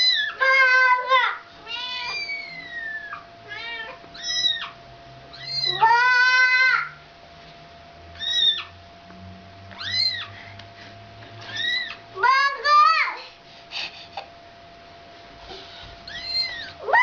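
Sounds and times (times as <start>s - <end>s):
cats meowing: 0.0s - 6.9s, 8.2s - 8.8s, 9.8s - 10.4s, 11.4s - 12.0s, 16.1s - 17.0s.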